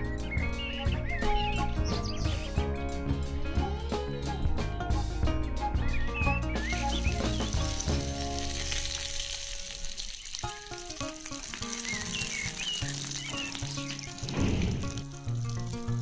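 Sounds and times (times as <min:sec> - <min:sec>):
background music: 0:00.0 - 0:16.0
food sizzling in hot oil: 0:06.6 - 0:16.0.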